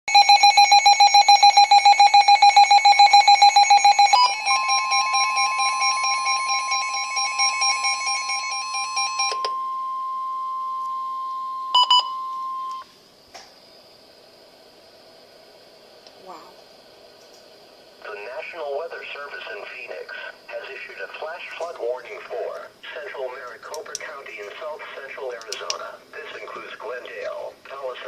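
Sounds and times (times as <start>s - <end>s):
loud pulsing alarm: 0.1s - 12.8s
short beeps: 9.2s - 12.8s.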